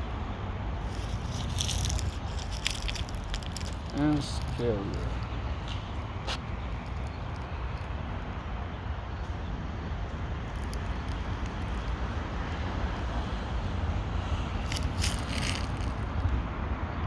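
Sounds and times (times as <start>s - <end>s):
outdoor background rumble: 0.0s - 17.0s
short crackles: 0.8s - 5.2s, 14.6s - 16.2s.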